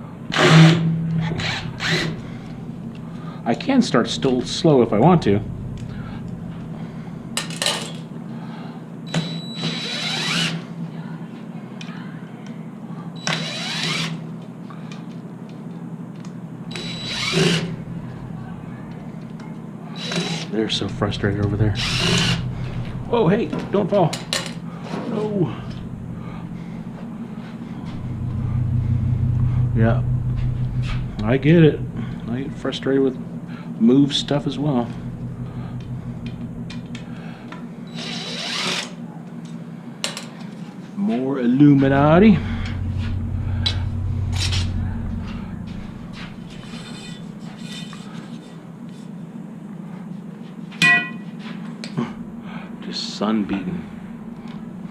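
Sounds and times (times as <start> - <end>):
impact driver whine: 0.3 - 3.4, 13.2 - 14.2, 16.7 - 18.3, 20.0 - 39.0, 41.8 - 47.5
impact driver motor spinning up: 16.7 - 17.7, 21.7 - 22.8.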